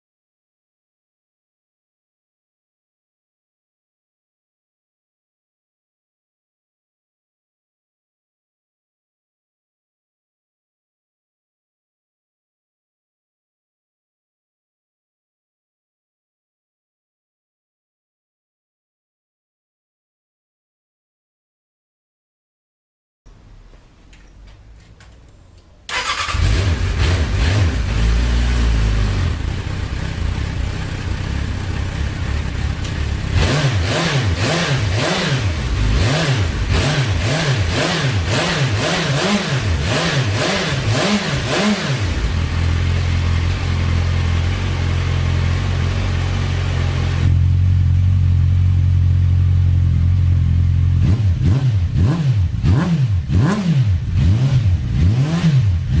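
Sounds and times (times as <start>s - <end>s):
motorcycle engine starting: 24.5s - 56.0s
motorcycle engine idling: 28.6s - 33.4s, 42.0s - 51.0s.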